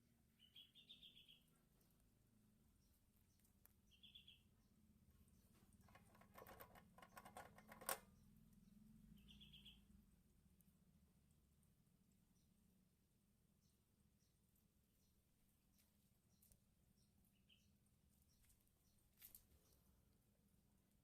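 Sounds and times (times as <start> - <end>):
faint bird chirp: 0.3 - 10.0, 13.6 - 20.1
small clicks and taps: 5.7 - 8.2.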